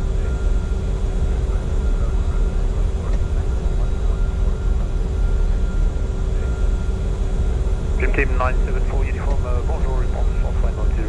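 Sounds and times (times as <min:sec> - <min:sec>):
steady hum: 0:00.0 - 0:11.0
jet cockpit airflow rush: 0:08.0 - 0:11.0.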